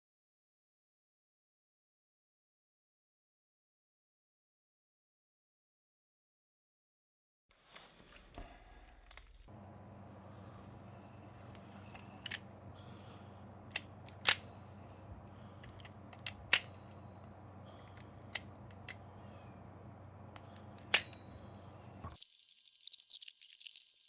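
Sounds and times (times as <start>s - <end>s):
low steady hum: 9.5s - 24.0s
small parts and tools clicking: 11.4s - 12.6s, 13.6s - 19.2s, 20.3s - 21.4s, 22.0s - 24.0s.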